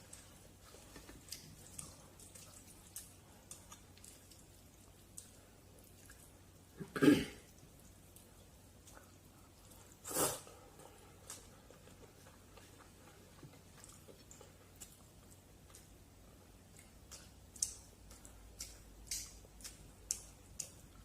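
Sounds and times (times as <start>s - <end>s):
chewing clicks: 16.7s - 21.0s.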